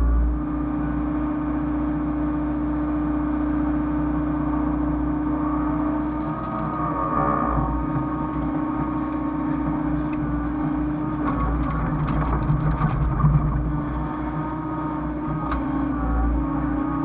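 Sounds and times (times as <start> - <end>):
excavator diesel engine running: 5.0 - 17.0
short clatters: 11.2 - 14.0.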